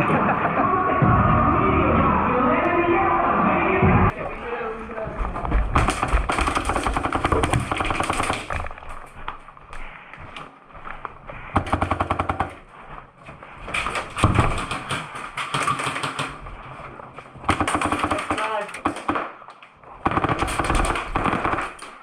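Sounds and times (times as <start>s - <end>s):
airsoft rifle full-auto bursts: 20.0s - 22.0s.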